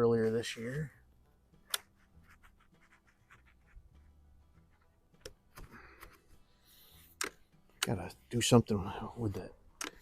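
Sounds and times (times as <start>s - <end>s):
air rifle loading clicks: 7.1s - 8.0s, 9.8s - 10.0s.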